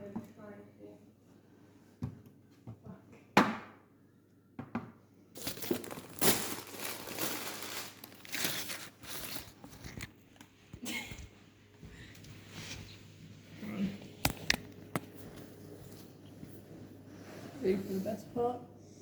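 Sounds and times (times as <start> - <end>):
crinkling and rustling: 5.4 - 11.3.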